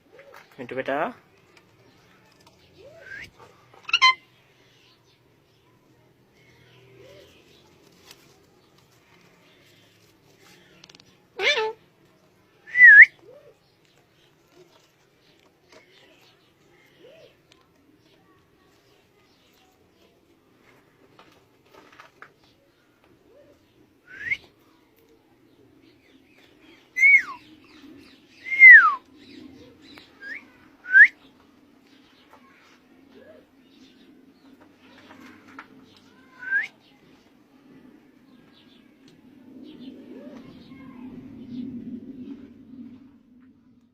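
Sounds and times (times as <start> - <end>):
pet bird whistling: 3.9 - 4.2, 27.0 - 27.4.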